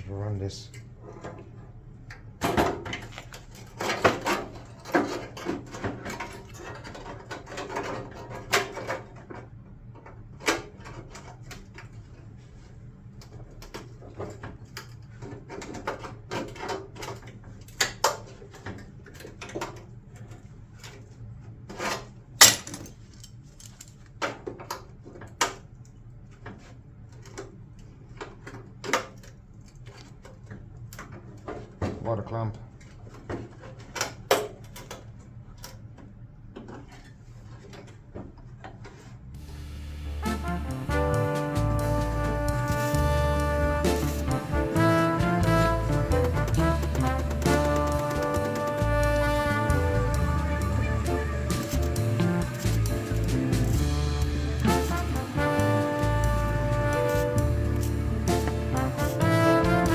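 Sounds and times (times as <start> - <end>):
low steady hum: 39.3 - 59.9.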